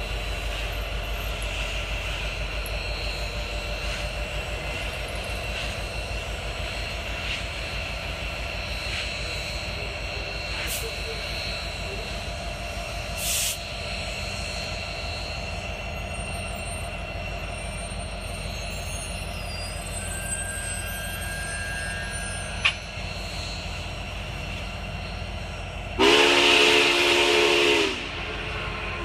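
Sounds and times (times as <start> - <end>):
steam hissing: 0.0 - 29.0
train rumbling past: 0.0 - 29.0
steam whistle chord: 26.0 - 28.5.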